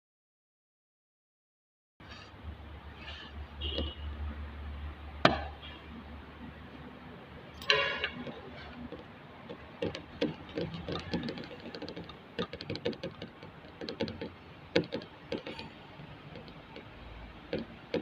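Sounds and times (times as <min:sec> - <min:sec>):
tools clicking and knocking: 0:07.5 - 0:18.0.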